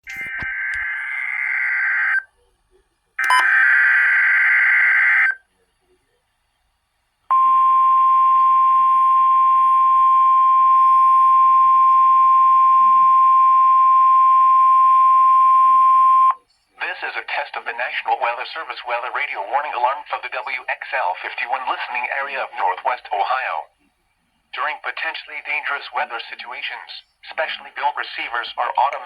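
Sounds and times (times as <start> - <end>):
single-pitched alarm tone: 3.2 - 3.6.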